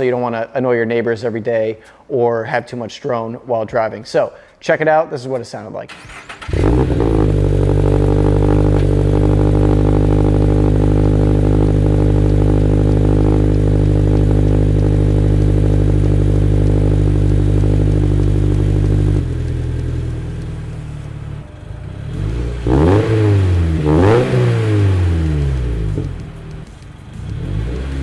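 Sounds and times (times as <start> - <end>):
car engine exhaust at steady revs: 6.5 - 28.0.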